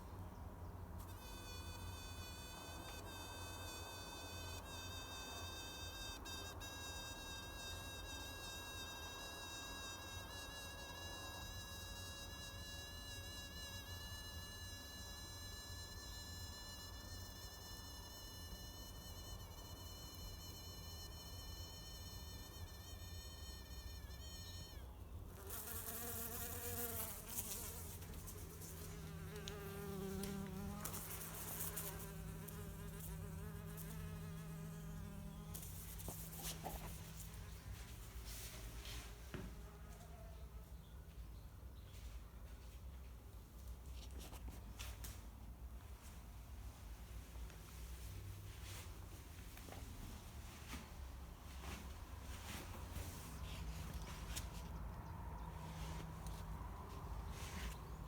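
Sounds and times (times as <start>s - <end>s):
high-pitched insect whine: 3.1s - 24.8s.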